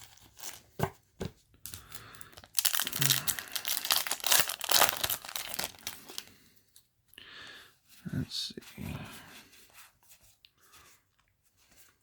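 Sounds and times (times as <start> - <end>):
foil wrapper crinkling: 0.0 - 0.7, 1.6 - 6.3.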